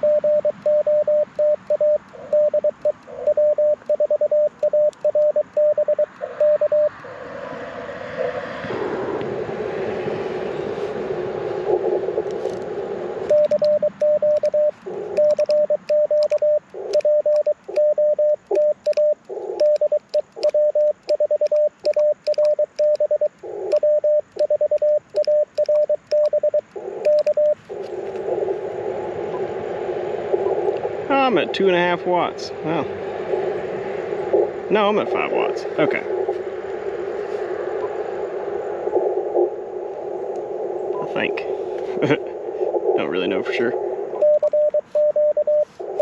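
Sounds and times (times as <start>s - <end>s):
morse code tone: 0.0s - 7.0s, 13.3s - 27.6s, 44.2s - 46.0s
radio receiver hiss: 0.0s - 7.1s, 10.6s - 46.0s.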